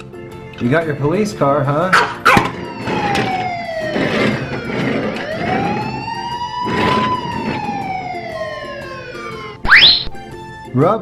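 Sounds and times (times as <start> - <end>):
police siren wailing: 2.3 - 10.2.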